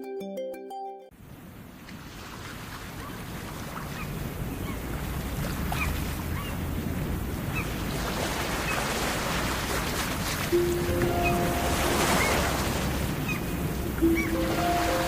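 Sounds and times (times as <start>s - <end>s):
ocean surf: 7.9s - 15.0s.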